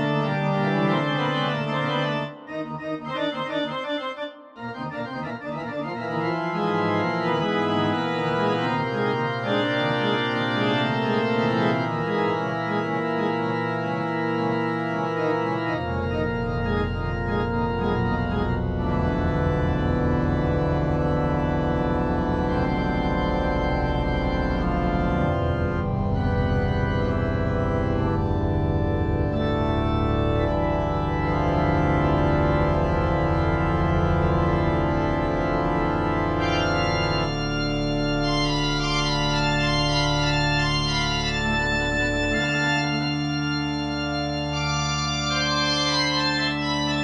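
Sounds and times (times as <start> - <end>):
organ chords: 0.0 - 47.0.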